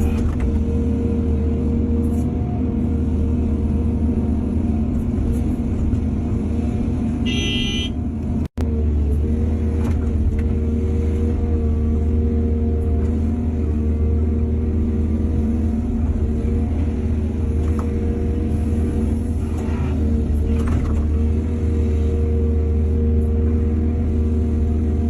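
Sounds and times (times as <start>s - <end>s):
diesel engine under load: 0.0s - 25.0s
short horn toot: 7.2s - 8.0s.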